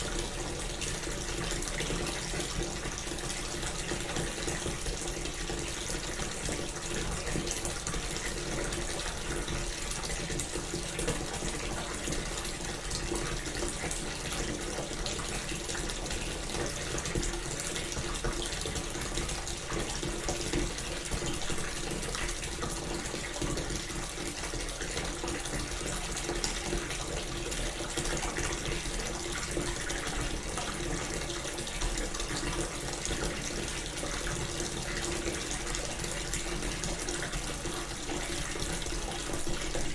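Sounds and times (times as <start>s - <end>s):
tap running into bathtub: 0.0s - 39.9s.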